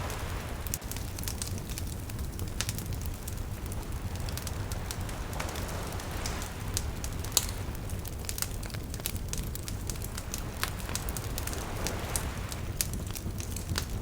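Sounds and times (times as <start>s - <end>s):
wave washing in: 0.0s - 1.6s, 3.2s - 7.9s, 9.9s - 12.8s
bonfire crackling and popping: 0.0s - 14.0s
surf rumbling: 0.0s - 14.0s.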